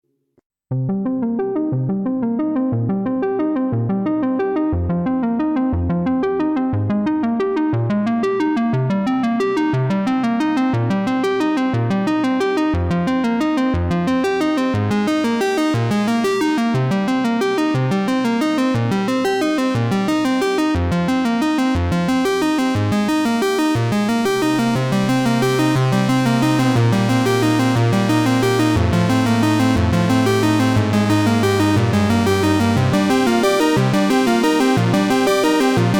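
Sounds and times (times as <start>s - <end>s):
synthesizer and keyboard notes: 0.8s - 35.9s
sustained bass line: 23.9s - 35.9s.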